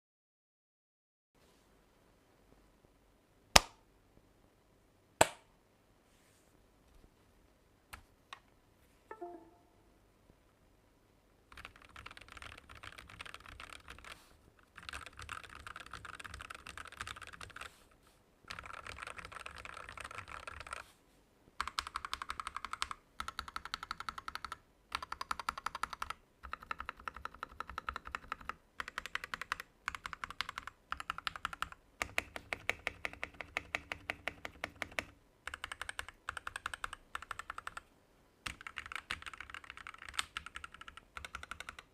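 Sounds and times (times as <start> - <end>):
fast typing on mechanical keyboard: 11.5 - 17.7, 18.5 - 20.8, 21.6 - 37.8, 38.4 - 41.9.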